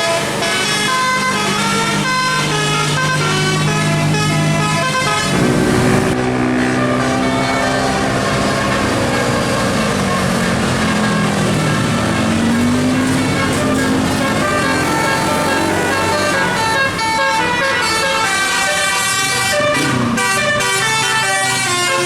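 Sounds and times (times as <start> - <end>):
bus engine running: 0.0 - 22.0
musical air horn melody: 0.0 - 22.0.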